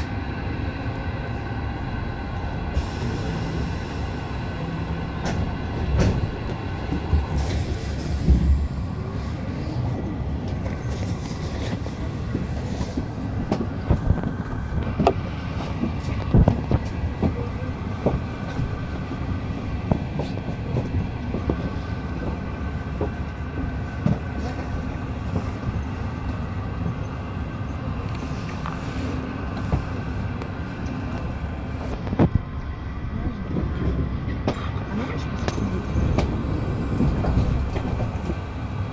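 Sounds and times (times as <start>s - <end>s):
train interior rumble: 0.0s - 38.9s
clicks and knocks from track: 5.2s - 8.6s.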